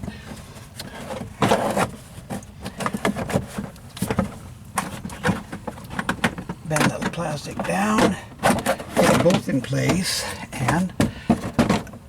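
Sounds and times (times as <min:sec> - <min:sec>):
plastic scraping rustle: 0:00.0 - 0:12.0.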